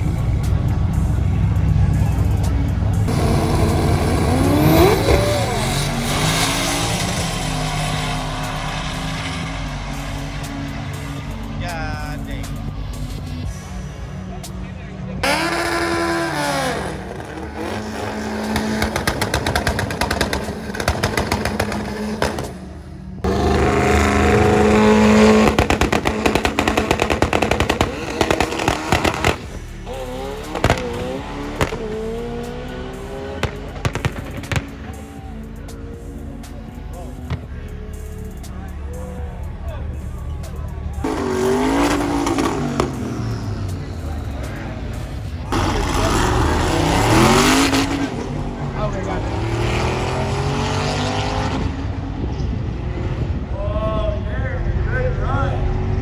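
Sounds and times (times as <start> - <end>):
car engine revving: 0.0 - 53.5
exhaust pops crackling: 2.4 - 9.6, 15.2 - 35.2, 39.4 - 51.8.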